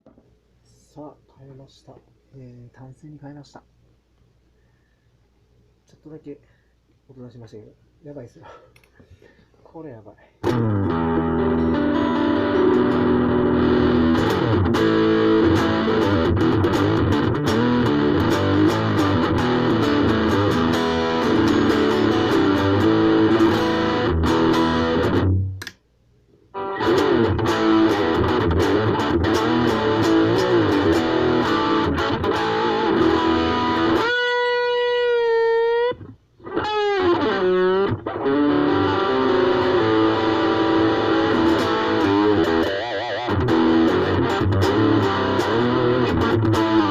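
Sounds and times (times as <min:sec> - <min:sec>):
electric guitar chords and riffs: 0:10.4 - 0:25.7, 0:26.6 - 0:46.9.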